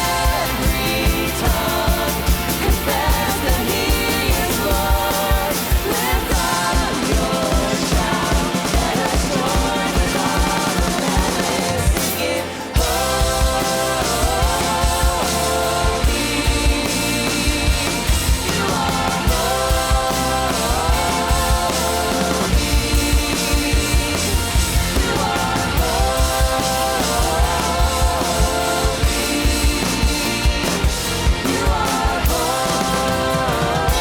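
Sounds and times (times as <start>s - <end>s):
drum kit beat: 0.0s - 34.0s
worship band playing: 0.0s - 34.0s.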